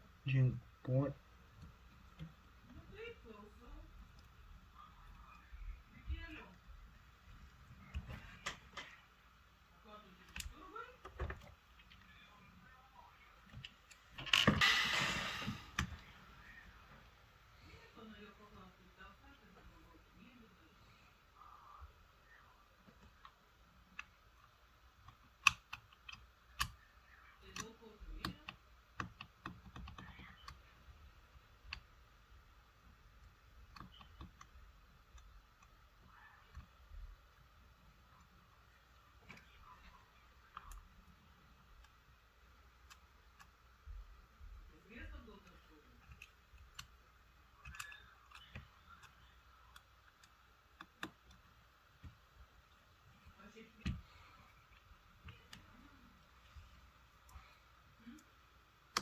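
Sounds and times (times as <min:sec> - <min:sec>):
small tools and phone parts clicking: 0:46.0 - 0:51.4.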